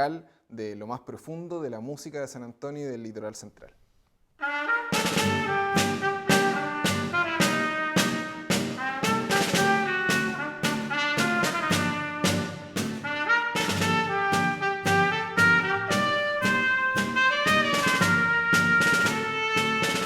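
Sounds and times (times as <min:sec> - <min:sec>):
brass ensemble playing: 0:04.4 - 0:20.0
steady accented beat: 0:04.5 - 0:20.0.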